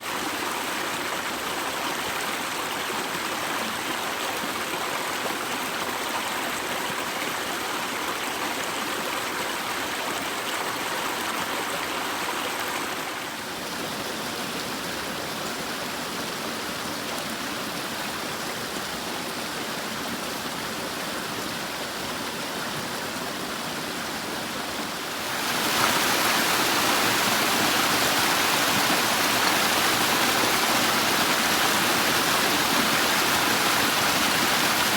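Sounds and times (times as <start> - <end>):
river water rushing: 23.4 - 34.9.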